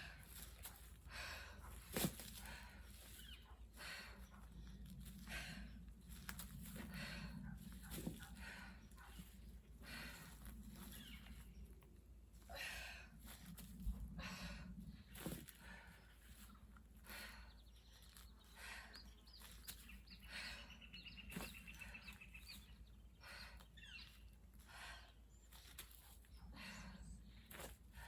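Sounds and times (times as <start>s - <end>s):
person breathing hard: 0.0s - 10.9s, 23.1s - 24.0s, 24.6s - 25.7s, 26.4s - 28.0s
small birds chirping: 2.3s - 12.0s, 14.9s - 28.0s.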